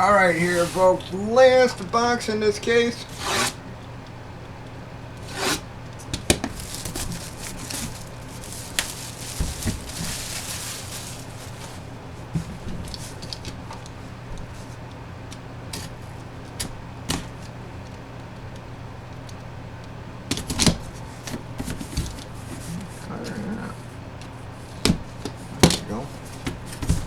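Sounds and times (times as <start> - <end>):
steady low hum: 0.0 - 27.0
packaging clicks and rustles: 6.0 - 14.6.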